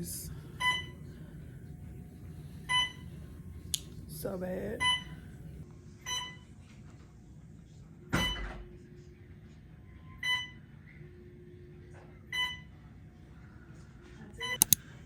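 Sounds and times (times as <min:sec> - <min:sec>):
hospital machine beeping: 0:00.0 - 0:06.5, 0:08.2 - 0:08.5, 0:10.2 - 0:10.6, 0:12.3 - 0:12.8.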